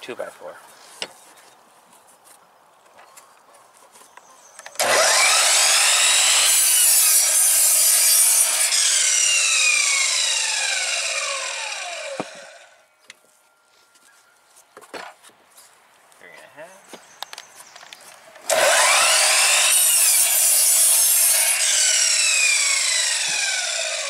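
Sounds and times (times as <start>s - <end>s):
saw cutting wood board: 4.7s - 12.8s, 18.5s - 24.0s
miter saw whine: 4.8s - 12.9s, 18.5s - 24.0s.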